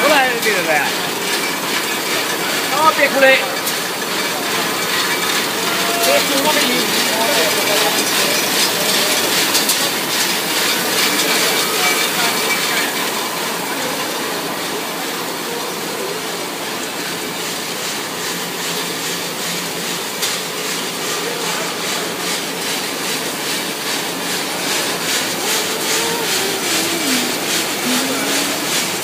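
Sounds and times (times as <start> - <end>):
machine clattering and clicking: 0.0 - 13.2.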